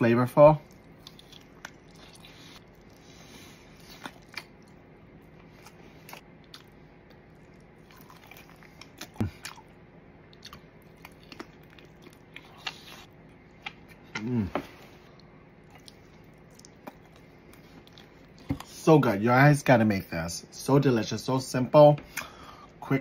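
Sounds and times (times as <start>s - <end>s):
person chewing food: 0.6s - 18.8s.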